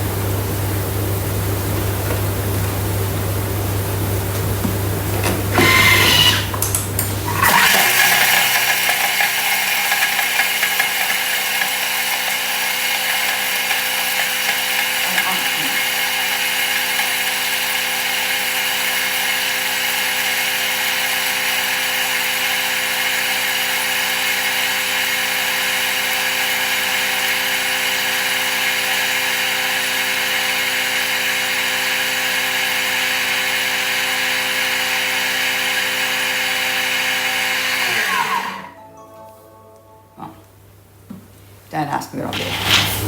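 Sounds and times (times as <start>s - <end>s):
kitchen appliance motor milling: 0.0s - 38.8s, 42.3s - 43.0s.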